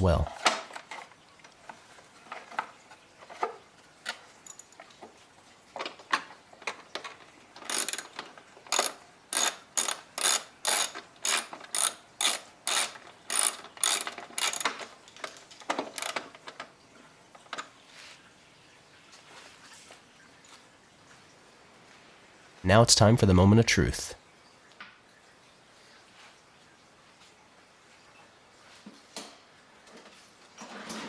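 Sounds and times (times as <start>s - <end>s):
hand ratchet clicking: 7.7s - 8.1s, 8.7s - 14.8s, 16.0s - 16.2s.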